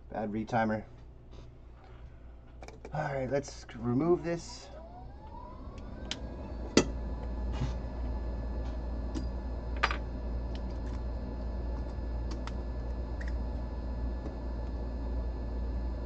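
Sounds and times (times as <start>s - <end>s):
hot air station blowing: 3.3s - 16.0s.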